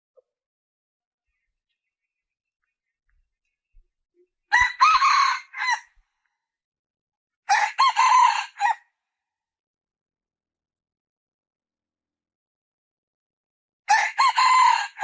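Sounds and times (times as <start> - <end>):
junglefowl hen calling: 4.5 - 5.9.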